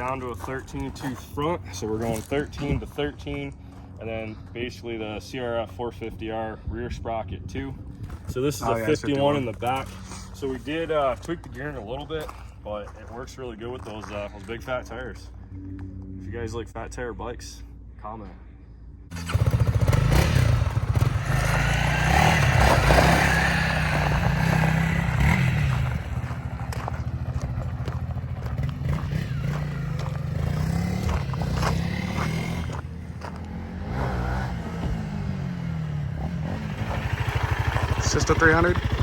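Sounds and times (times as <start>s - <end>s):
dirt bike engine revving: 19.1s - 39.0s.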